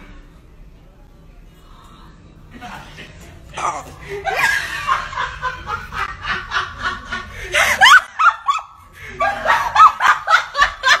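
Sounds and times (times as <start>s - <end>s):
person laughing hard: 3.8s - 11.0s.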